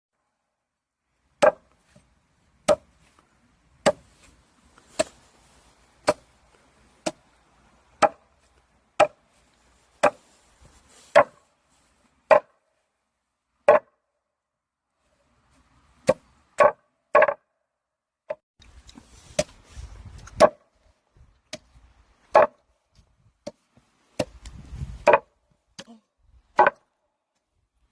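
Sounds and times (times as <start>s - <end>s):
axe chopping root: 1.4s - 1.6s, 2.6s - 2.9s, 3.8s - 4.1s, 4.9s - 5.2s, 6.0s - 6.3s, 7.0s - 7.2s, 8.0s - 8.2s, 10.0s - 10.2s, 16.0s - 17.4s, 20.3s - 20.6s, 24.2s - 26.0s, 26.6s - 26.8s.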